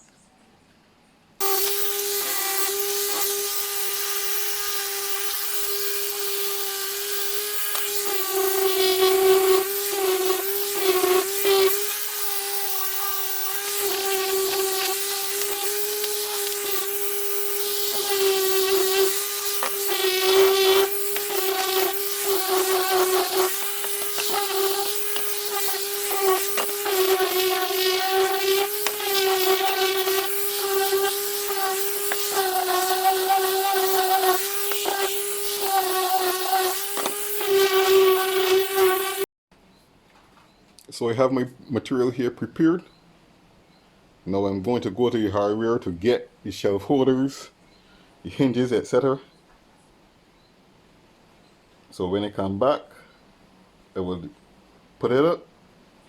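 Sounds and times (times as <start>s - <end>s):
jigsaw cutting wood: 1.4s - 39.3s.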